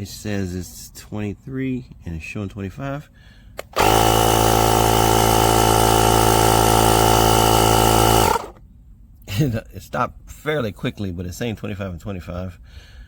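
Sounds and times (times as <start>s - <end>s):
air compressor motor humming: 3.6s - 8.6s.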